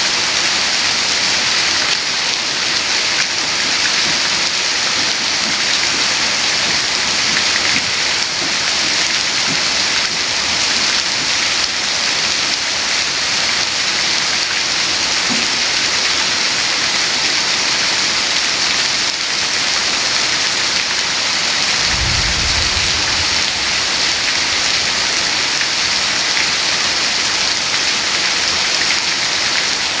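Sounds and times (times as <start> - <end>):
heavy rain falling: 0.0 - 30.0
low rumble: 21.6 - 26.2.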